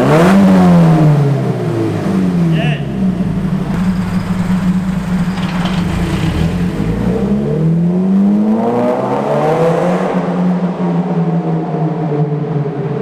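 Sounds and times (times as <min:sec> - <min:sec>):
car engine idling and revving: 0:00.0 - 0:13.0.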